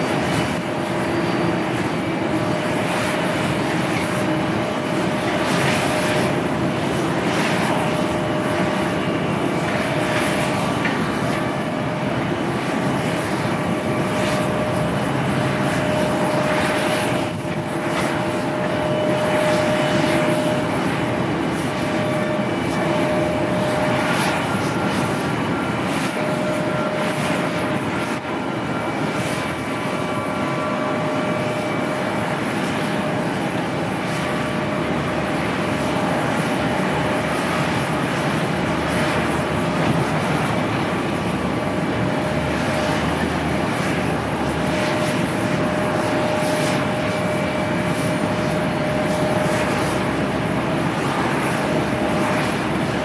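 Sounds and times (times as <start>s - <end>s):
jet engines rushing: 0.0s - 53.0s.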